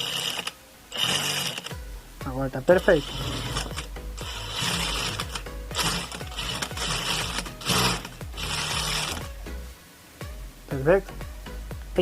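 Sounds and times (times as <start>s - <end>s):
sewing machine running: 0.0s - 1.7s, 2.8s - 9.2s.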